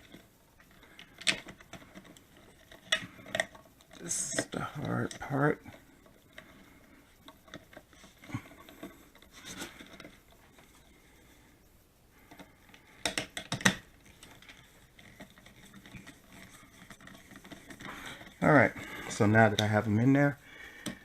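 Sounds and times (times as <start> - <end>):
sharp clicks and knocks: 12.2 - 19.8
small scrapes and rubs: 14.0 - 20.0.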